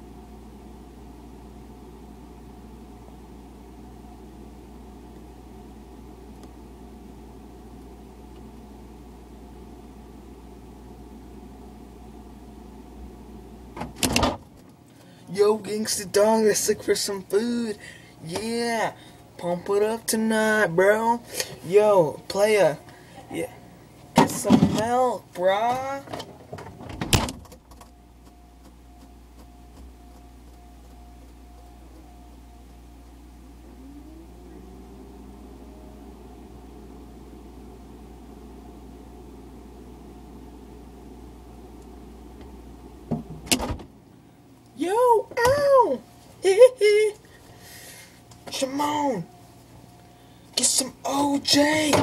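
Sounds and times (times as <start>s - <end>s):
refrigerator humming: 0.0s - 52.0s
faint thin tone: 29.6s - 39.2s.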